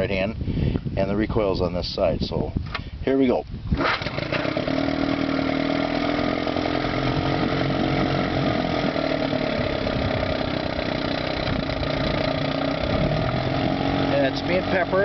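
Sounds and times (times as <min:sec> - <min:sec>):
outboard motor running: 0:03.7 - 0:15.0.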